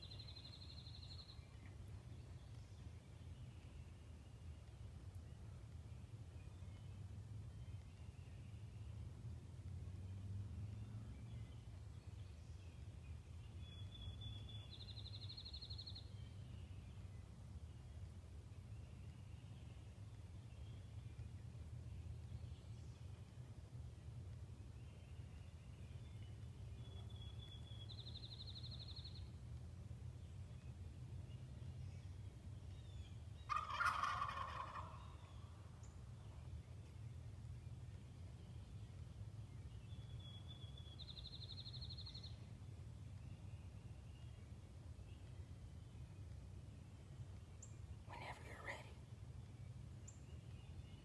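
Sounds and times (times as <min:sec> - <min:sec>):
faint low rumble: 0:00.0 - 0:51.0
small songbird singing: 0:13.5 - 0:17.1, 0:24.8 - 0:29.4, 0:38.4 - 0:42.5
turkey gobbling: 0:33.5 - 0:35.2.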